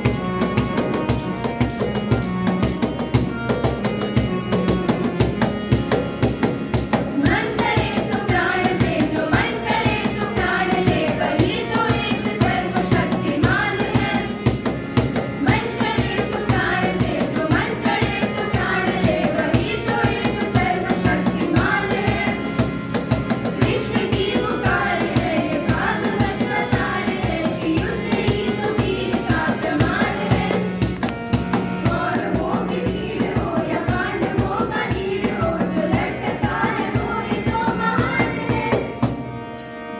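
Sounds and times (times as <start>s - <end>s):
shaken percussion beat: 0.0s - 39.8s
group of voices singing: 7.2s - 14.6s, 15.4s - 22.8s, 23.5s - 39.2s.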